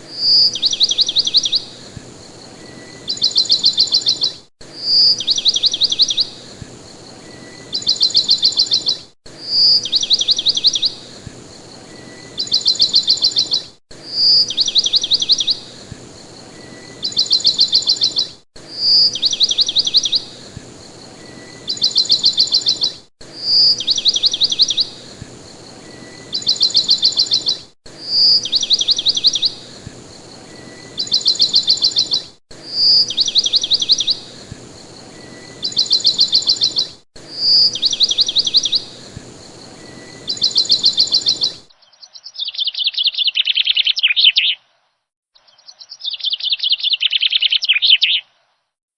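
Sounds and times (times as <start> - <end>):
songbird whistling: 2.6 - 6.3, 7.3 - 11.0, 12.0 - 15.6, 16.6 - 20.3, 21.2 - 25.1, 25.9 - 29.6, 30.6 - 34.4, 35.2 - 39.2, 39.8 - 44.6, 46.0 - 48.2.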